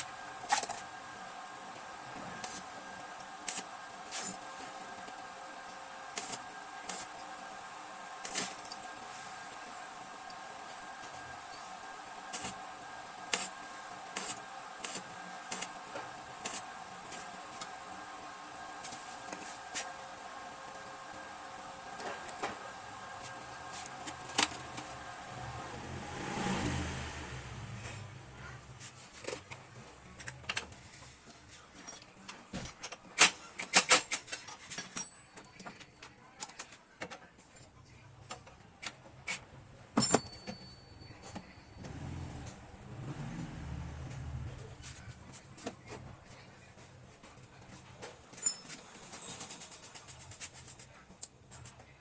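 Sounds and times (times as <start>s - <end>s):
metallic clinks of tools: 48.3s - 49.4s.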